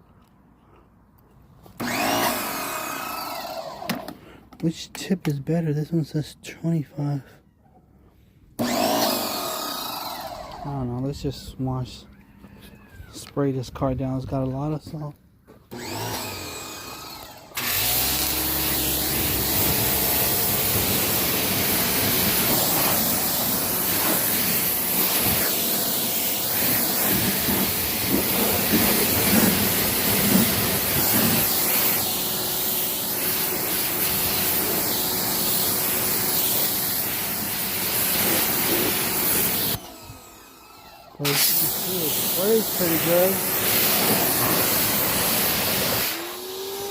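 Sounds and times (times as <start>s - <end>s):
pressure washer water jet hissing: 1.8s - 4.1s, 8.6s - 10.8s, 15.7s - 40.5s, 41.2s - 46.9s.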